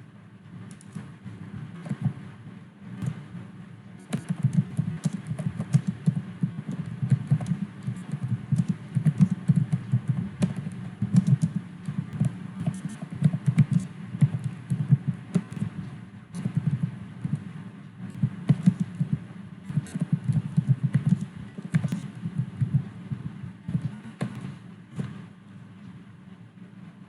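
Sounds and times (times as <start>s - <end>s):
typing on computer keyboard: 4.1s - 15.7s, 18.1s - 22.8s.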